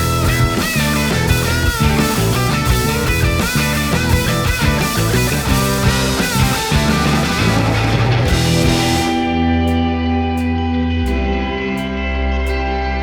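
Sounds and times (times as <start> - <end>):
loud rock music: 0.0 - 13.0.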